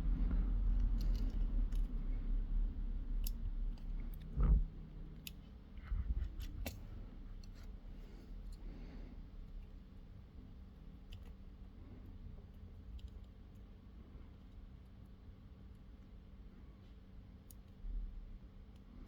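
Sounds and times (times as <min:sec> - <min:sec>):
low hum: 0:00.0 - 0:09.8.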